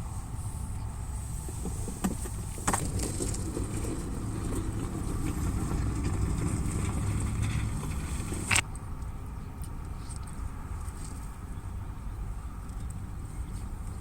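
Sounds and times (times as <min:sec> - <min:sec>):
fire low rumble: 0:00.0 - 0:08.6.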